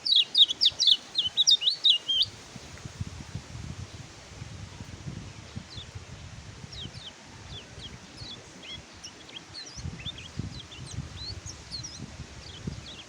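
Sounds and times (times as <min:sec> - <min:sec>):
bird chirping rapidly: 0:00.0 - 0:02.3.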